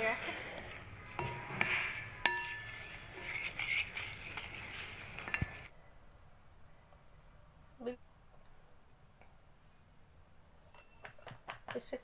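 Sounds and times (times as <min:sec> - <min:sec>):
spoon scraping a metal pan: 0:00.9 - 0:05.7.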